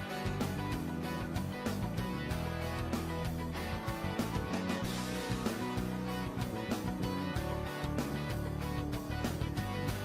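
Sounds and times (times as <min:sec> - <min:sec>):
background music with guitar and beat: 0:00.0 - 0:10.0.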